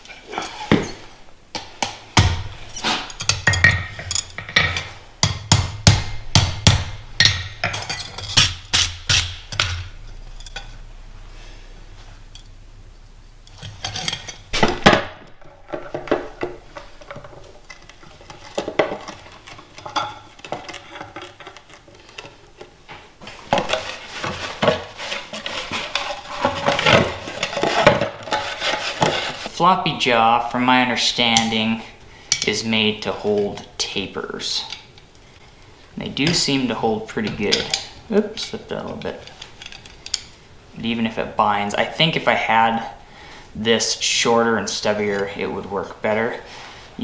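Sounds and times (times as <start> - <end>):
tongs rattling: 1.8 - 11.2, 12.2 - 14.7, 37.5 - 40.4
hammer striking steel: 1.8 - 12.7.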